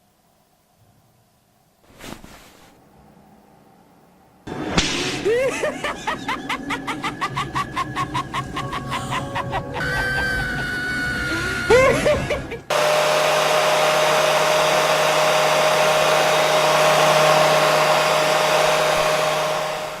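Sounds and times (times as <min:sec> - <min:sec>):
gliding pitched cries: 0:05.2 - 0:12.7
small electric motor whirring: 0:12.7 - 0:20.0.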